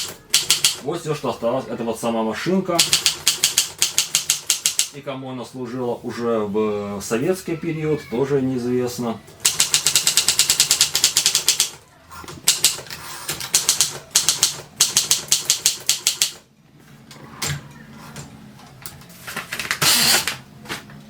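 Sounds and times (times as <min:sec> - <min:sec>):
typewriter key strikes: 0:00.0 - 0:00.8, 0:02.8 - 0:05.0, 0:09.4 - 0:11.7, 0:12.4 - 0:16.4.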